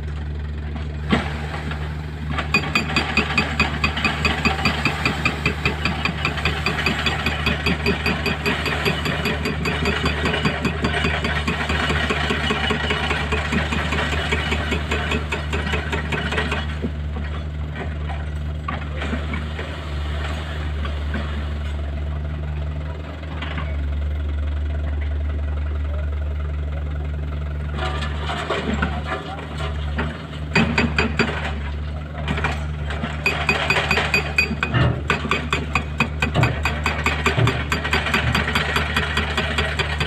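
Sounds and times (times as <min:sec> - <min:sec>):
excavator diesel engine: 0:00.0 - 0:40.0.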